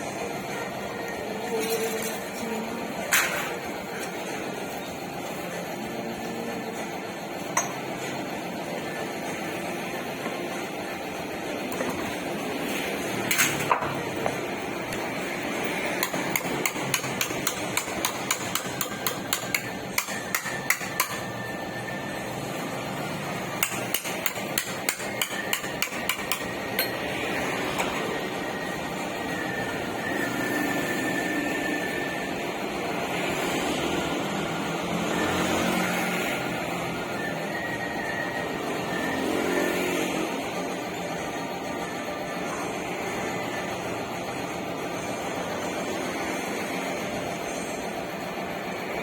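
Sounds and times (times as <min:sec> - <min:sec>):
hammer striking sheet metal: 0:16.0 - 0:21.3, 0:23.6 - 0:27.0.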